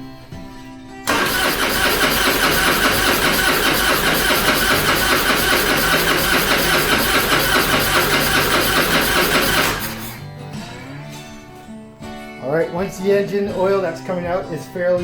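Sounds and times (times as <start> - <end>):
motorcycle engine cranking: 1.1 - 10.3.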